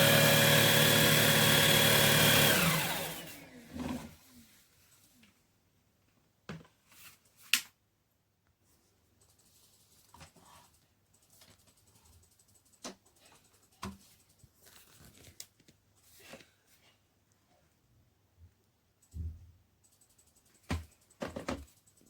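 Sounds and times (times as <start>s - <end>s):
rustling and tearing: 14.6s - 16.6s.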